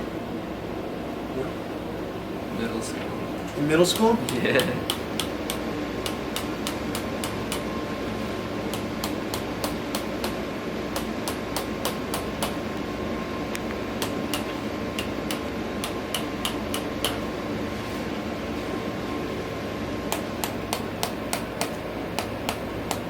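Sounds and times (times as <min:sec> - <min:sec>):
percussive tapping on body: 0:08.7 - 0:10.4, 0:11.0 - 0:12.6.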